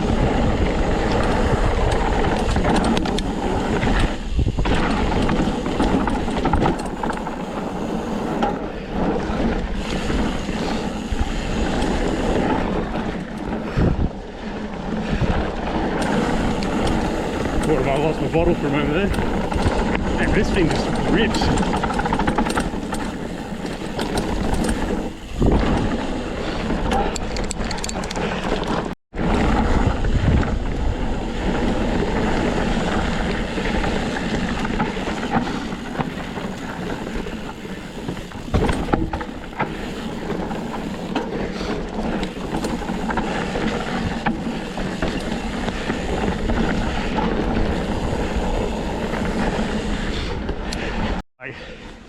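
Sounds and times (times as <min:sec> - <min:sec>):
wind buffeting microphone: 0:00.0 - 0:28.1, 0:28.8 - 0:51.0
bike tyres rolling over trail: 0:00.0 - 0:52.0.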